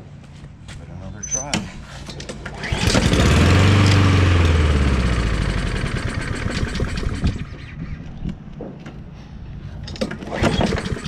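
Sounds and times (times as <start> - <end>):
lawnmower engine running: 2.4 - 7.7, 10.1 - 11.0.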